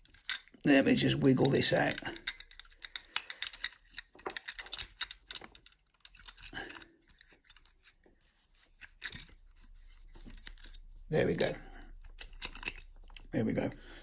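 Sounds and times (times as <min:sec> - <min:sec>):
metallic clicks and scrapes of pick: 0:08.6 - 0:10.8, 0:12.0 - 0:13.3.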